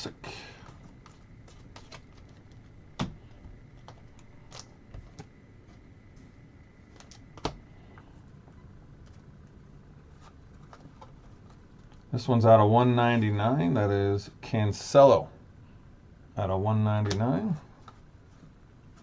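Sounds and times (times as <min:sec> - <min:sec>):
cards clicking and rustling: 0:00.6 - 0:08.0, 0:10.2 - 0:12.1.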